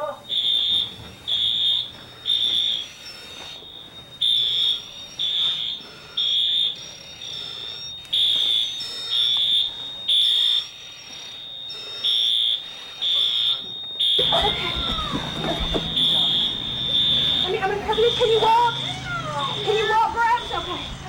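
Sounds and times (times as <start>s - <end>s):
fire alarm beeping: 0.0s - 21.0s.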